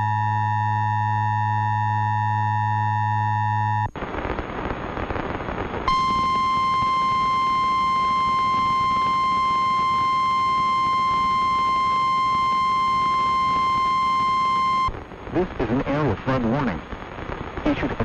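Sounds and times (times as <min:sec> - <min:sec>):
radio hiss: 0:03.9 - 0:18.0
steady warning alarm tone: 0:05.9 - 0:14.9.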